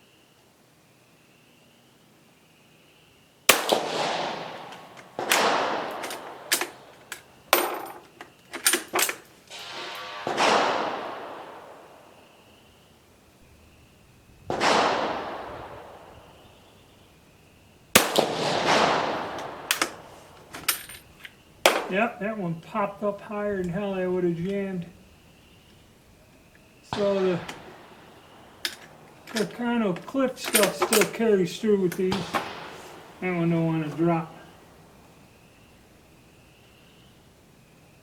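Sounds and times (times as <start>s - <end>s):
rifle shots echoing: 3.5s - 37.3s
rifle bolt metallic clacks: 4.7s - 9.2s, 19.3s - 21.9s, 26.9s - 34.3s.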